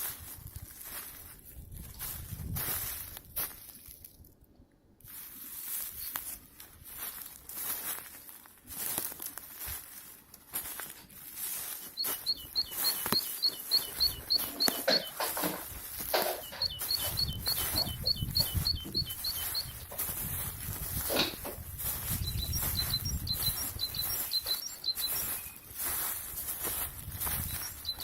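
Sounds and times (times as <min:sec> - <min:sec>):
songbird singing: 0:11.8 - 0:28.0.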